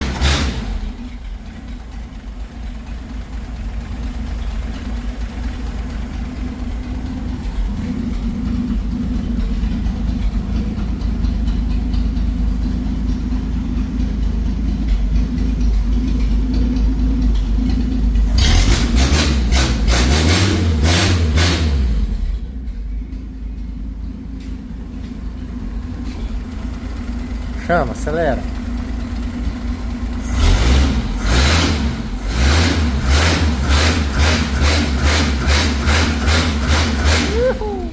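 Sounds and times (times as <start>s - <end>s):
engine revving in blips: 0.0s - 1.2s, 14.7s - 23.3s, 30.2s - 37.9s
engine idling with open exhaust: 0.0s - 37.9s.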